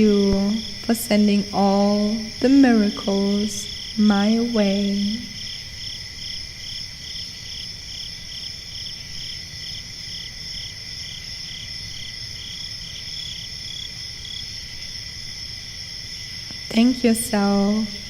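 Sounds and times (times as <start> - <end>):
crickets chirping: 0.0 - 18.0
pulsing cricket chirp: 0.0 - 18.0.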